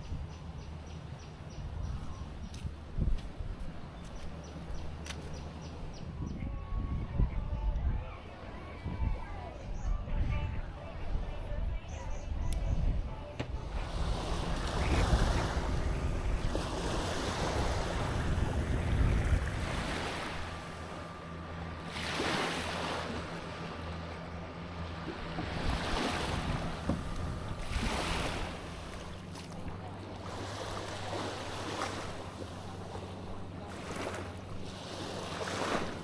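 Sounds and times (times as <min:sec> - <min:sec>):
low hum: 0:00.0 - 0:36.0
wind buffeting microphone: 0:01.5 - 0:36.0
waves washing onto beach: 0:13.4 - 0:36.0.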